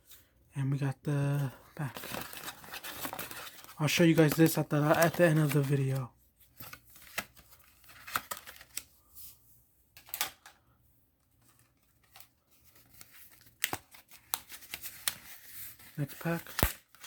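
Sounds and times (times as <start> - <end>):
paper packaging clicks and rustles: 1.3 - 9.0, 11.3 - 17.0.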